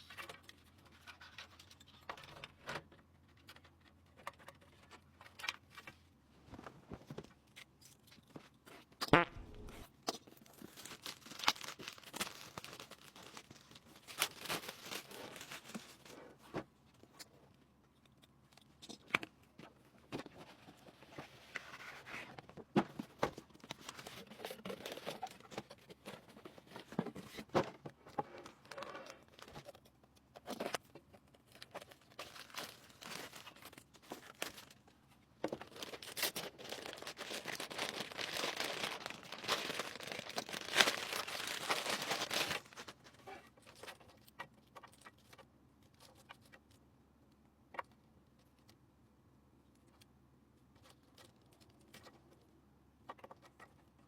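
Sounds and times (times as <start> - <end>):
plastic packaging crinkling and tearing: 9.4 - 16.2, 31.4 - 34.9, 35.5 - 44.2.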